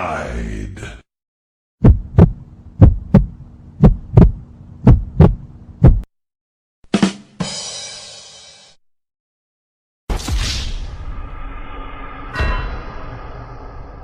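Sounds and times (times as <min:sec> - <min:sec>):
heartbeat thumps: 0:01.8 - 0:06.1
bright ringing crash: 0:10.2 - 0:14.0.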